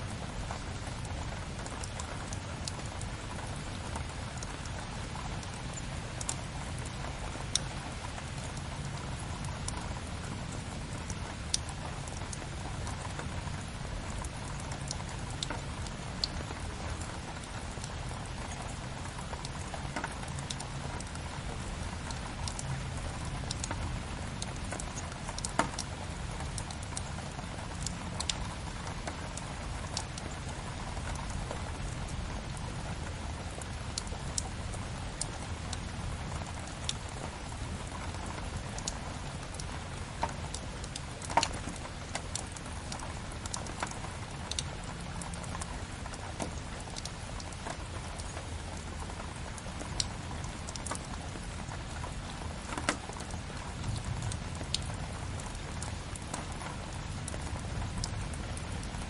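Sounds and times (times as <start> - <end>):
steady rain: 0.0 - 59.0
wood fire crackling: 38.8 - 59.0.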